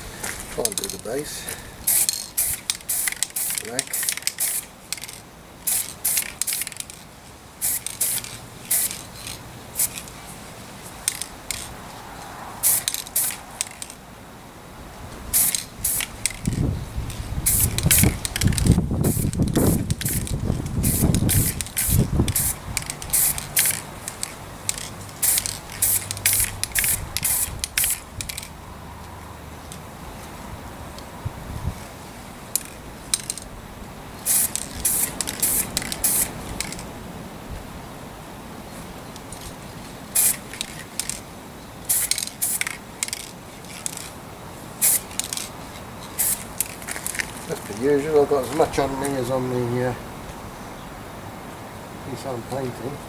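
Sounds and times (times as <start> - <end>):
spray paint hissing bursts: 1.8 - 7.0, 7.6 - 10.2, 10.8 - 11.8, 12.6 - 14.0, 15.3 - 28.5, 34.2 - 36.9, 40.1 - 41.2, 41.8 - 44.1, 44.8 - 47.8.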